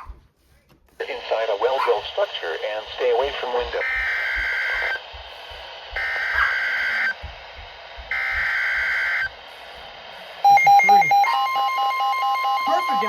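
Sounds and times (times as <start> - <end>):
phone alert rapid pulsed beeping: 8.1 - 9.3, 10.4 - 13.0.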